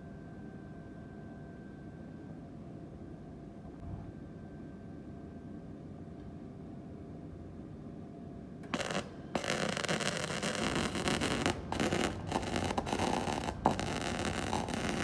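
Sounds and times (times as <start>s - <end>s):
welder arc crackling: 8.6s - 15.0s.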